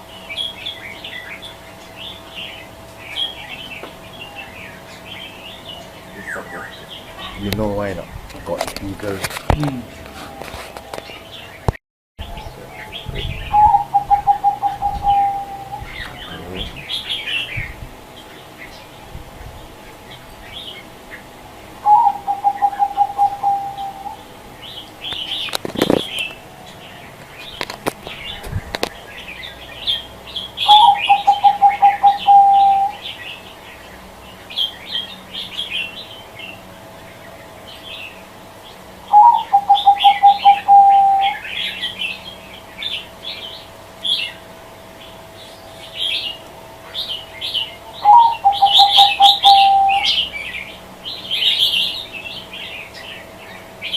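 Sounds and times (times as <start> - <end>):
small birds chirping: 0.0 - 53.9
dove cooing: 1.3 - 11.5, 12.2 - 17.8, 21.8 - 26.5, 27.1 - 33.4, 39.0 - 42.2, 45.4 - 52.9.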